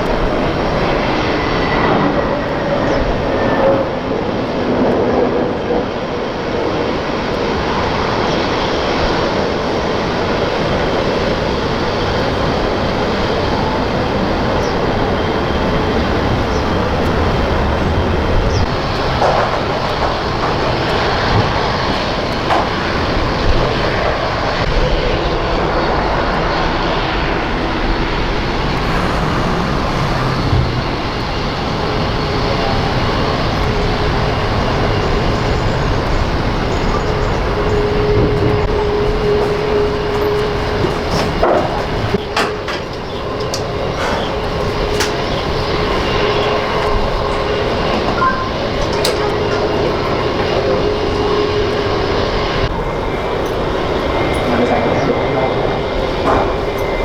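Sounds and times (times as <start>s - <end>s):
aircraft engines rumbling: 0.0s - 57.0s
steady hum: 28.5s - 37.7s.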